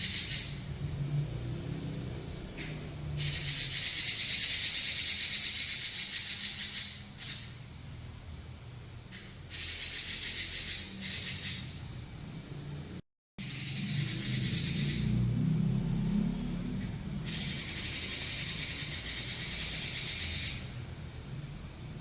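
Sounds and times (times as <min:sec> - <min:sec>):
bird singing rolling trills: 0:00.0 - 0:00.8, 0:03.2 - 0:07.8, 0:09.5 - 0:12.0, 0:13.4 - 0:15.4, 0:17.2 - 0:21.0.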